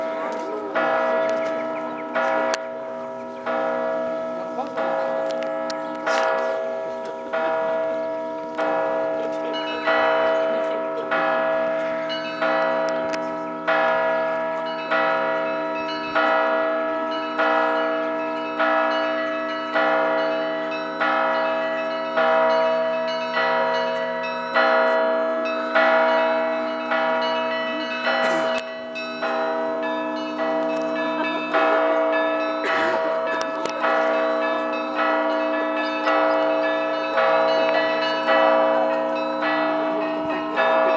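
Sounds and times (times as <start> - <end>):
church bell struck: 0.0 - 40.9.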